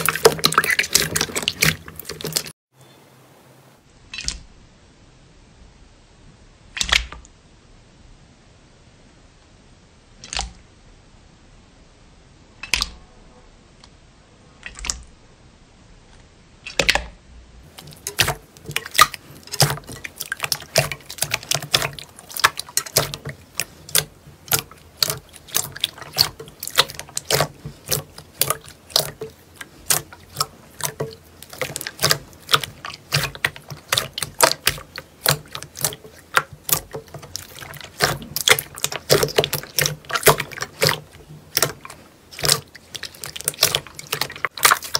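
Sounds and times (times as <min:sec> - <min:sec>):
slime squeezed wet sticky pops: 0:00.0 - 0:02.5, 0:17.7 - 0:44.9.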